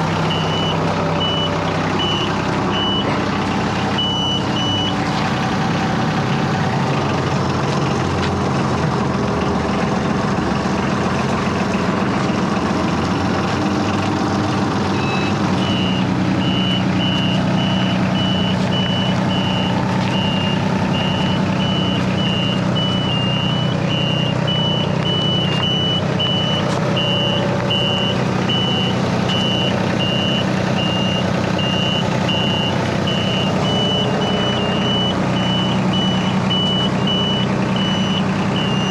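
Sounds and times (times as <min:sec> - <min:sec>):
reversing alarm beeping: 0:00.0 - 0:05.0, 0:14.9 - 0:38.9
vehicle engine running: 0:00.0 - 0:38.9.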